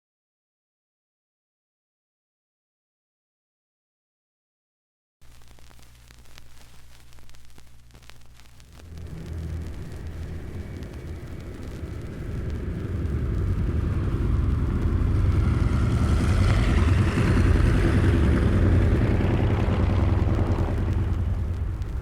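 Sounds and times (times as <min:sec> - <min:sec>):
vehicle engine rumbling: 0:08.8 - 0:22.0.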